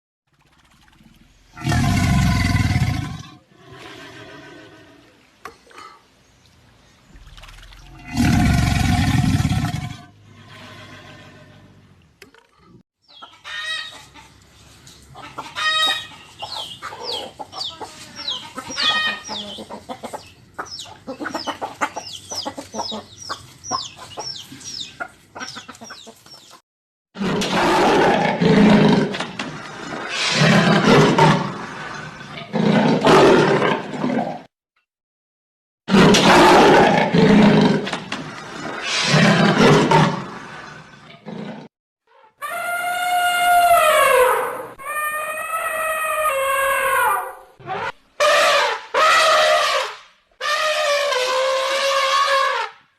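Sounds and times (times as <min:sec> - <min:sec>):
large animal roaring: 0:01.5 - 0:05.1, 0:07.8 - 0:11.9, 0:27.2 - 0:29.2, 0:35.9 - 0:37.9
bird clucking and calling: 0:13.1 - 0:14.4, 0:15.1 - 0:26.6.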